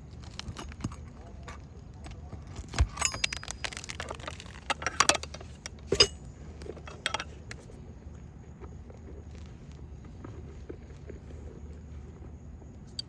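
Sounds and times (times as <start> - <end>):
metallic clinks of hand tools: 2.9 - 6.3, 6.9 - 7.3.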